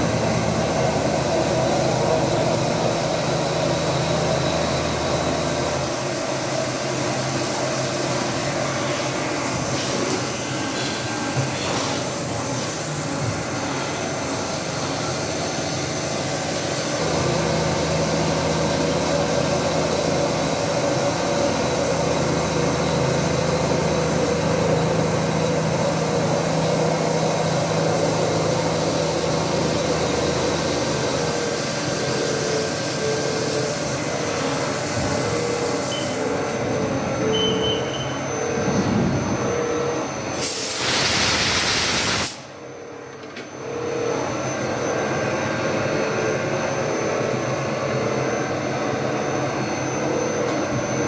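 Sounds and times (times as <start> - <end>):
machining hum and hiss: 0.0 - 51.0
pulsing tone: 30.1 - 40.4.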